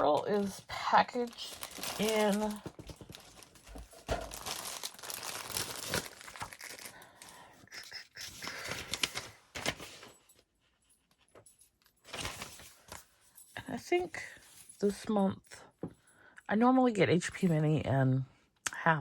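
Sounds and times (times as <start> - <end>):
packaging bag crinkling: 0.0 - 10.0.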